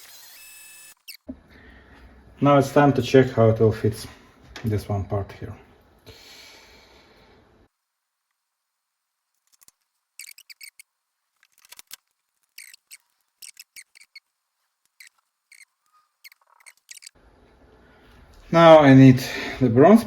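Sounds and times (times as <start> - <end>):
small metal parts clicking: 9.4 - 10.8, 11.4 - 14.2, 14.8 - 17.2.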